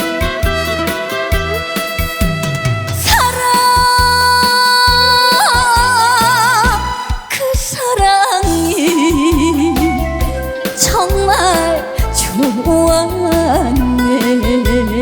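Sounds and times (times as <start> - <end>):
trot song instrumental: 0.0 - 15.0.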